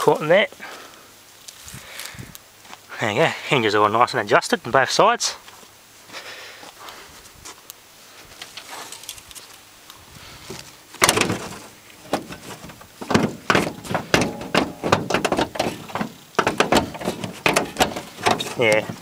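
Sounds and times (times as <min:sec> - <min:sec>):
loud metal thud: 0:11.0 - 0:19.0
sharp metal knocks and clanks: 0:11.0 - 0:19.0.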